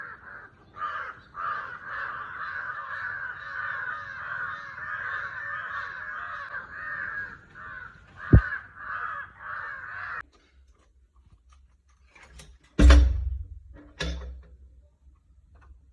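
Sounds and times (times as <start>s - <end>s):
crows cawing: 0.0s - 10.3s.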